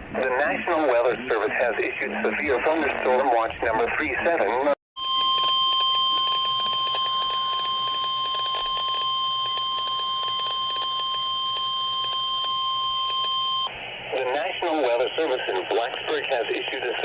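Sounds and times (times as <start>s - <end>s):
faint static crackle: 2.3s - 17.0s
steady alarm tone: 5.0s - 13.7s.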